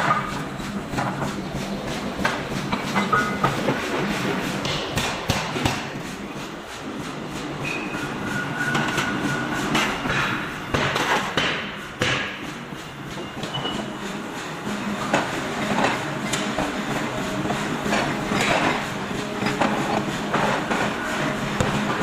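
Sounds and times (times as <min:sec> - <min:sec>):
continuous clatter: 0:00.0 - 0:22.0.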